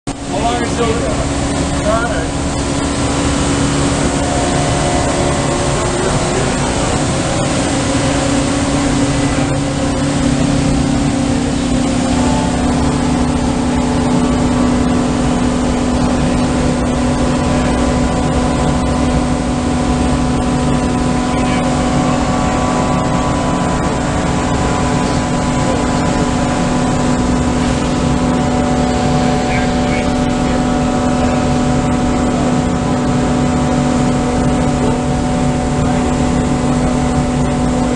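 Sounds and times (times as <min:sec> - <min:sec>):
surface grinder machine hum: 0:00.1 - 0:37.9.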